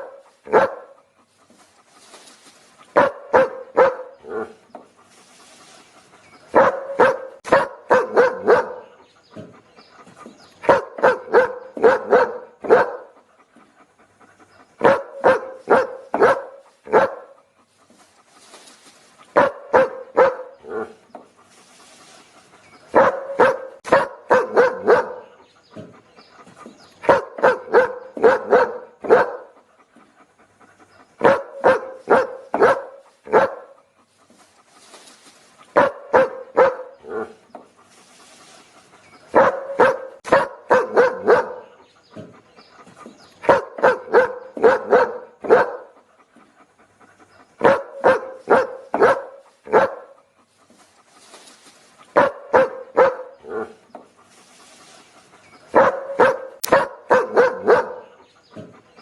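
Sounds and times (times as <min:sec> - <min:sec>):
dog barking: 0:00.0 - 0:01.0, 0:02.9 - 0:04.6, 0:06.5 - 0:09.0, 0:10.6 - 0:13.2, 0:14.8 - 0:17.4, 0:19.3 - 0:21.0, 0:22.9 - 0:25.4, 0:27.0 - 0:29.6, 0:31.2 - 0:33.8, 0:35.7 - 0:37.4, 0:39.3 - 0:42.3, 0:43.4 - 0:46.0, 0:47.6 - 0:50.2, 0:52.1 - 0:53.8, 0:55.7 - 0:58.2.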